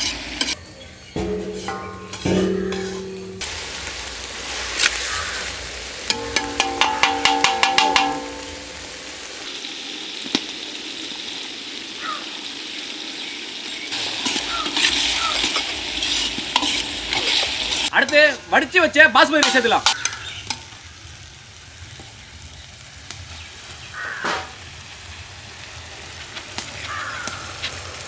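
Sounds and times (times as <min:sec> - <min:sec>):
metal spatula scraping a pan: 0:00.0 - 0:00.6, 0:01.2 - 0:03.5, 0:06.1 - 0:08.9, 0:14.0 - 0:18.5
vegetables sizzling in a pan: 0:00.0 - 0:00.6, 0:01.2 - 0:28.0.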